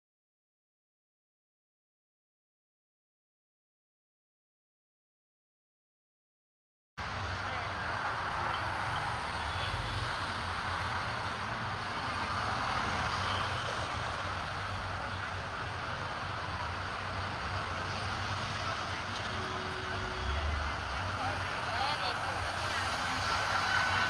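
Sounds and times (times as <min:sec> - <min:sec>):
rushing noise: 0:07.0 - 0:24.0
vehicle engine hum: 0:07.0 - 0:24.0.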